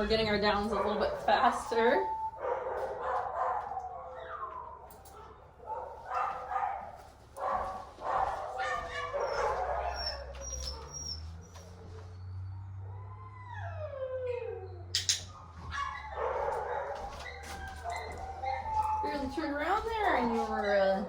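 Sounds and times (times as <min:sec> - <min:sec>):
puppy whining: 0:01.4 - 0:05.4, 0:08.6 - 0:21.0
sharp click: 0:15.0 - 0:15.4.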